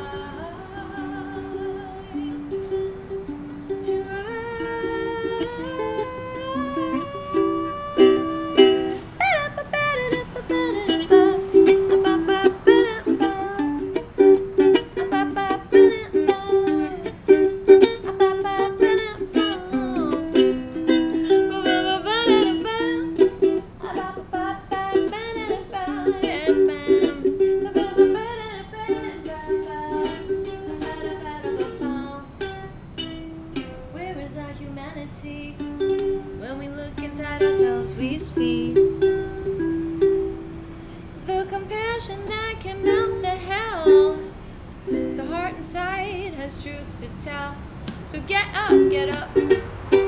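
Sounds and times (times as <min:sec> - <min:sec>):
wavering melody line: 0:00.0 - 0:34.5
ukulele strumming: 0:00.0 - 0:50.0.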